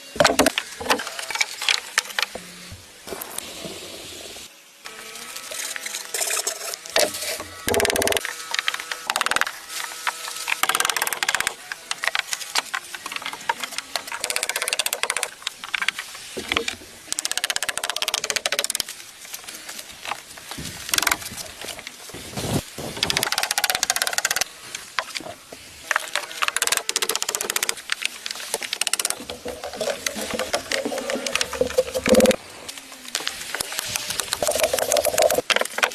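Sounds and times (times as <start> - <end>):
wood scraping and knocking: 26.4 - 32.4.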